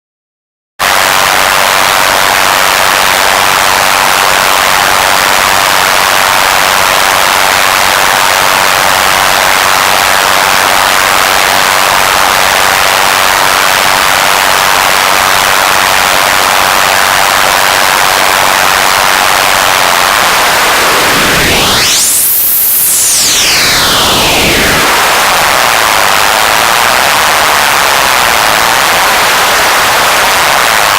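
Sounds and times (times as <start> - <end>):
radio static hiss: 7.6 - 30.9
whistling tone sweeping: 20.0 - 26.3.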